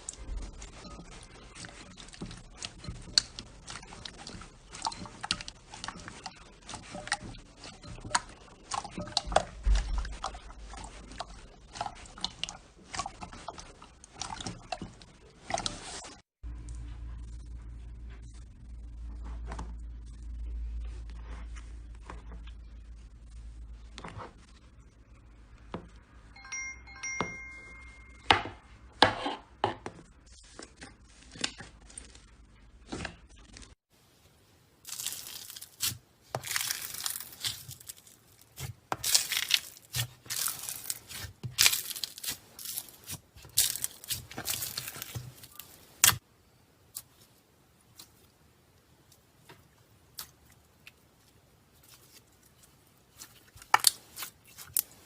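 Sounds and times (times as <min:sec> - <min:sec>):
hands squishing slime: 0:00.0 - 0:16.1, 0:34.8 - 0:46.2, 0:46.8 - 0:55.0
brief high tones: 0:26.4 - 0:28.5.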